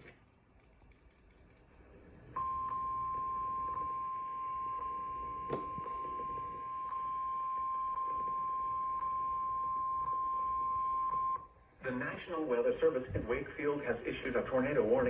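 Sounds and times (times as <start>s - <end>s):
steady high alarm tone: 2.4s - 11.6s.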